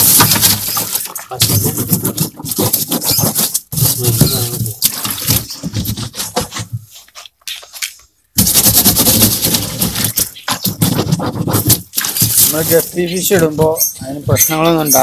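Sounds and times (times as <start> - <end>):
water sloshing in plastic tank: 0.0 - 3.8.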